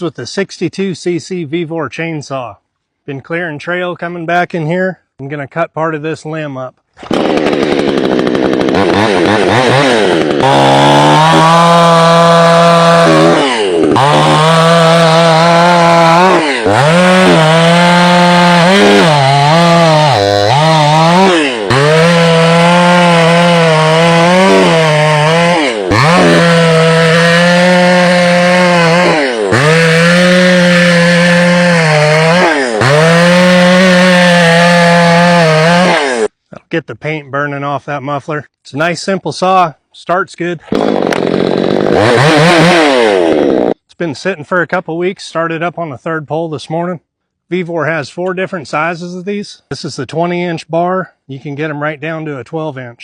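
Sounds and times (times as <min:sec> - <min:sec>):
chainsaw revving and cutting wood: 0:07.0 - 0:36.4, 0:40.6 - 0:43.8.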